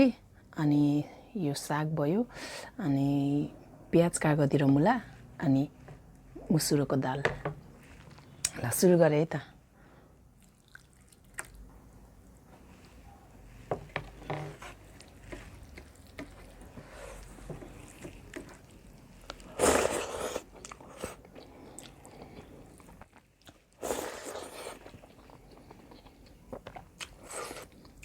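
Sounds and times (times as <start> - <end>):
wet chewing: 10.4 - 11.6, 14.7 - 28.0.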